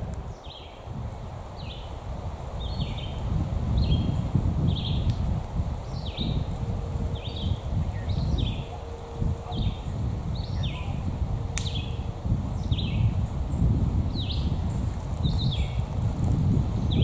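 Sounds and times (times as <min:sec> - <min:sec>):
steady low rumble: 0:01.0 - 0:17.0
bird chirping: 0:09.5 - 0:11.0, 0:11.6 - 0:15.8.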